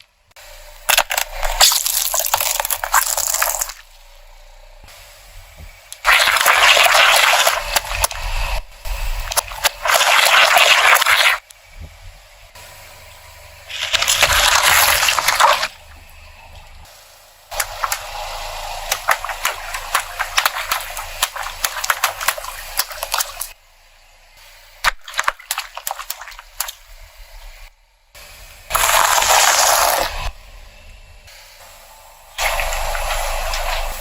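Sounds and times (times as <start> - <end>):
wet gushing hiss: 4.9 - 11.5, 13.6 - 15.8, 16.8 - 23.6, 24.5 - 30.4, 31.3 - 34.0.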